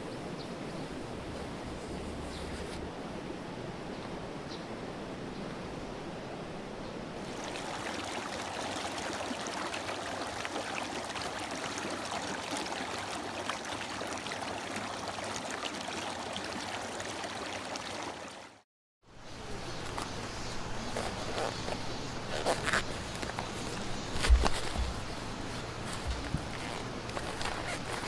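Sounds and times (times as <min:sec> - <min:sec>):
stream water rushing: 0:07.2 - 0:18.6.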